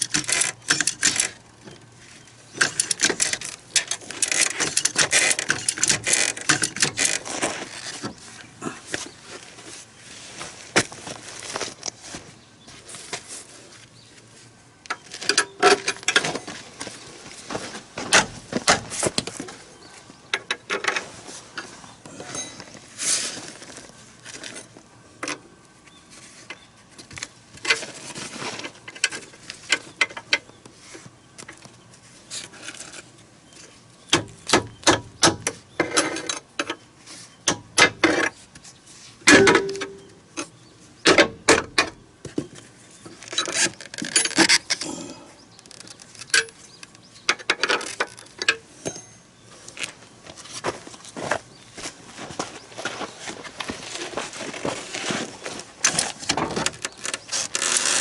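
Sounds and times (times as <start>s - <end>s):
hand tools clanking on metal: 22.1s - 22.9s, 39.3s - 40.2s, 48.4s - 49.2s.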